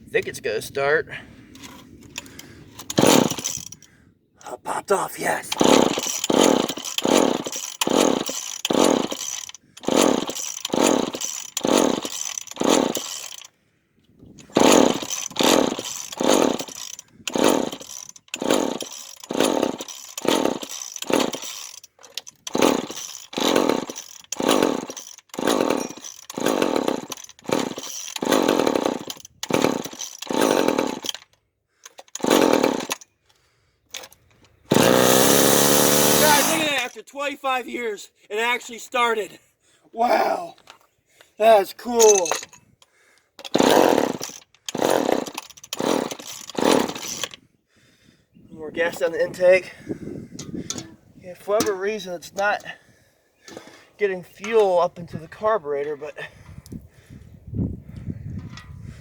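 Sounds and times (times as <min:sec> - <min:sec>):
chainsaw engine surging: 0:02.2 - 0:03.9, 0:04.7 - 0:13.5, 0:14.4 - 0:31.2, 0:31.9 - 0:33.0, 0:34.0 - 0:37.0, 0:43.5 - 0:47.4.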